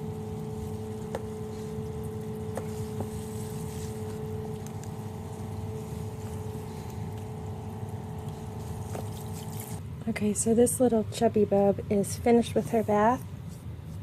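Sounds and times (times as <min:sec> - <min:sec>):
tap water running: 0:00.0 - 0:09.8
steady hum: 0:00.0 - 0:14.0.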